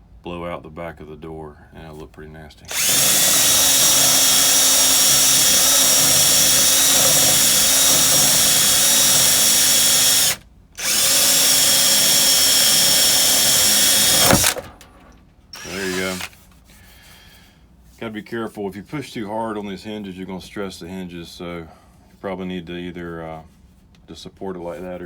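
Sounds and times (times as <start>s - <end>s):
power drill boring through wood: 2.7s - 14.9s, 15.6s - 16.4s.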